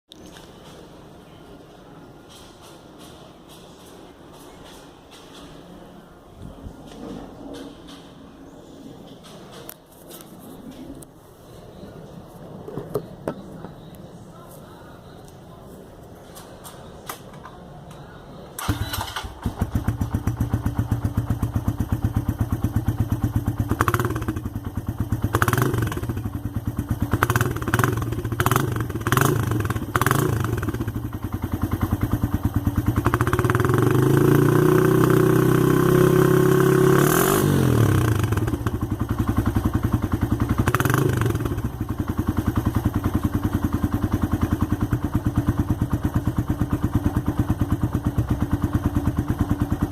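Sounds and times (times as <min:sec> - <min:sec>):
motorcycle engine revving and idling: 0:18.6 - 0:49.9.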